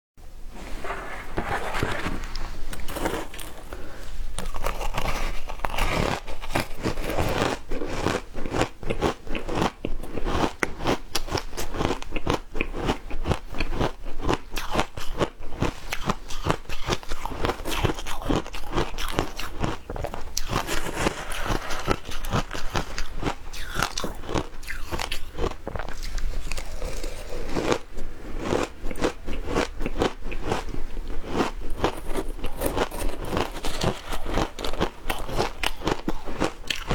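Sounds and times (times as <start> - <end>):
ice crunching between teeth: 1.8 - 36.9.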